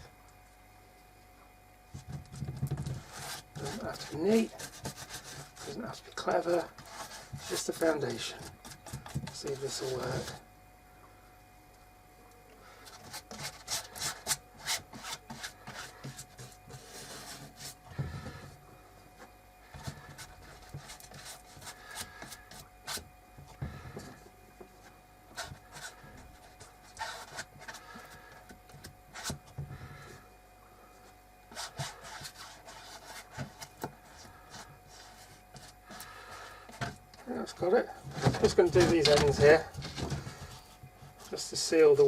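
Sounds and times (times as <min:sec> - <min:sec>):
brush scrubbing resin into cloth: 0:02.8 - 0:10.4, 0:12.8 - 0:17.9, 0:19.7 - 0:23.1, 0:24.8 - 0:28.4, 0:31.5 - 0:42.0.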